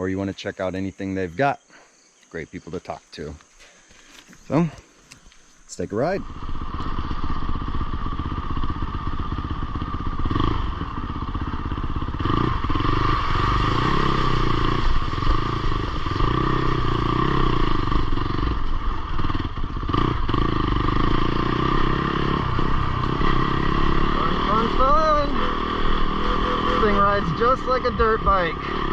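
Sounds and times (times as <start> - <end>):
motorcycle engine revving: 4.3 - 28.9.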